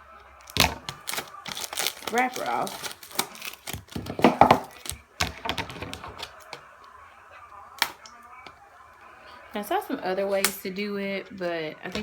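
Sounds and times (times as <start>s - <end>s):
plastic wrapper crinkling: 0.4s - 6.6s.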